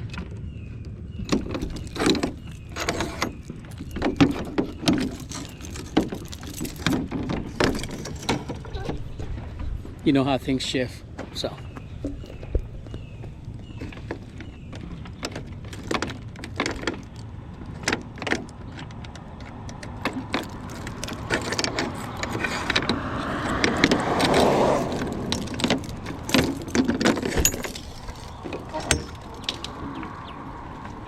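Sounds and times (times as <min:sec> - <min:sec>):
metal clicks and clanks: 0:01.2 - 0:09.4, 0:13.8 - 0:31.0
keys jangling: 0:01.4 - 0:08.9, 0:20.2 - 0:30.0.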